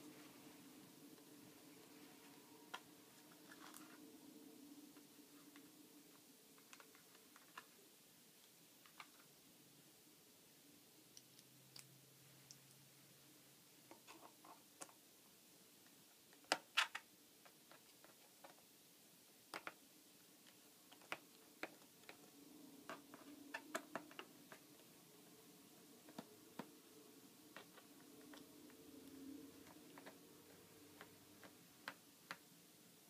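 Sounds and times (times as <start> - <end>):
small clicks and taps: 19.5 - 19.8, 20.4 - 22.3.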